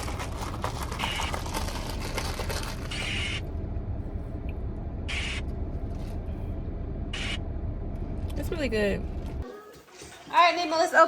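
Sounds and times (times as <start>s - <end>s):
ice rattling in plastic cup: 0.0s - 2.9s
low hum: 0.0s - 9.4s.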